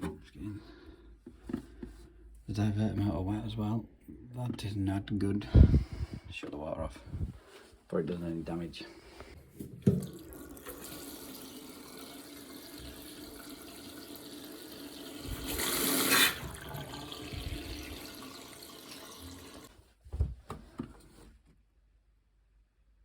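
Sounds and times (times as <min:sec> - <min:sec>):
water running out of boiler valve: 0:09.9 - 0:19.7.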